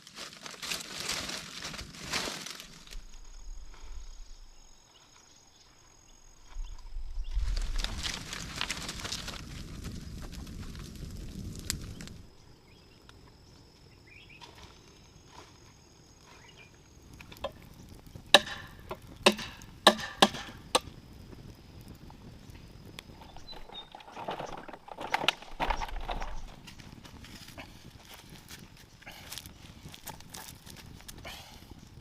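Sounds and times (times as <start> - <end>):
rustling: 0.0 - 5.3, 6.3 - 12.2, 23.2 - 31.2
blade chopping wood: 18.3 - 20.9.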